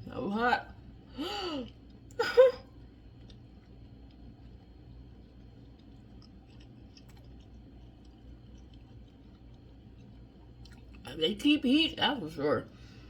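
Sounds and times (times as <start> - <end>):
low steady hum: 0.0 - 13.0
chewing noodles: 1.6 - 11.2.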